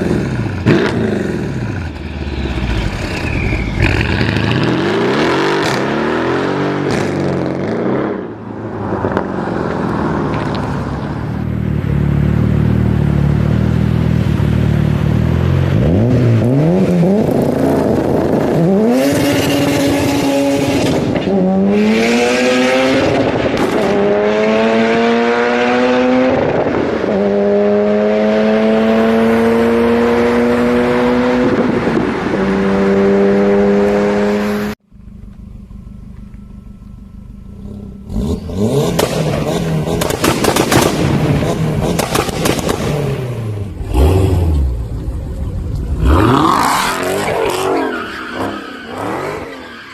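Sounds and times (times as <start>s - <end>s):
car engine accelerating through gears: 11.7s - 34.8s.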